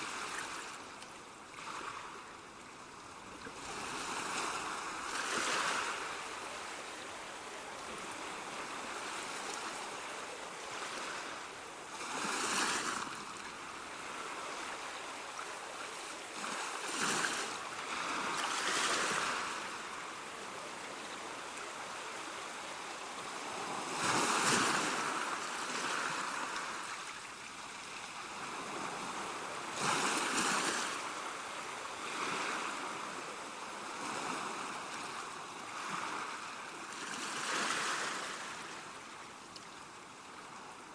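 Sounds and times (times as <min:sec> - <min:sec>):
ocean waves breaking: 0:00.0 - 0:39.2.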